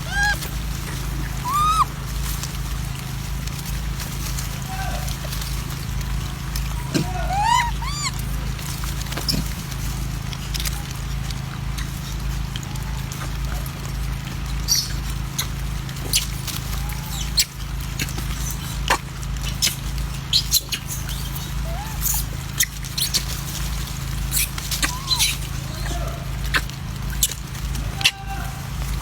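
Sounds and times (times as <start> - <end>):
monkeys squeaky calls: 0.0 - 2.0, 6.7 - 8.4, 16.1 - 17.6, 18.4 - 23.2, 24.3 - 28.8.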